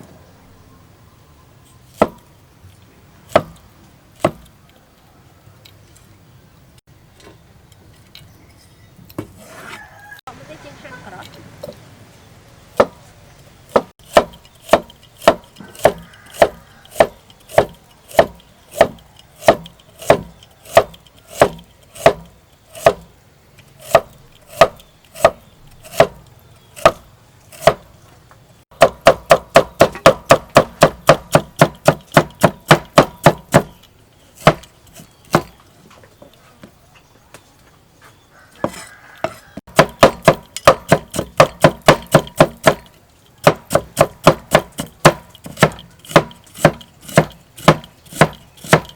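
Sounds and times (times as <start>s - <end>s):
knife chopping vegetables: 13.7s - 23.0s, 23.8s - 27.8s, 28.8s - 33.8s, 34.4s - 35.6s, 38.6s - 42.8s, 43.4s - 48.9s.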